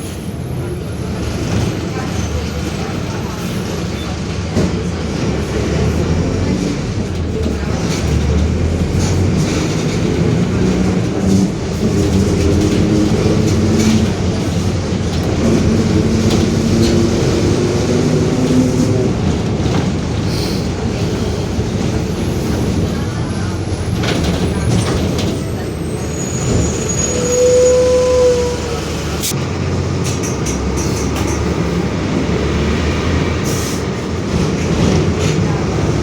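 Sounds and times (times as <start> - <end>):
bus diesel engine running: 0.0 - 36.0.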